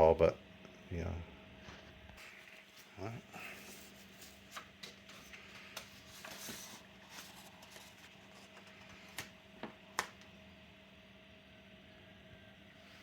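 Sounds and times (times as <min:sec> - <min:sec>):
faint steady hum: 0:00.0 - 0:13.0
laptop handling clicks and rustles: 0:04.4 - 0:10.3.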